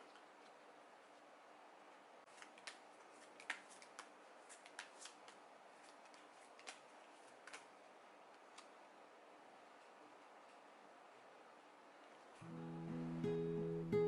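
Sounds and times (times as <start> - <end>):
cards being shuffled: 2.3 - 7.8.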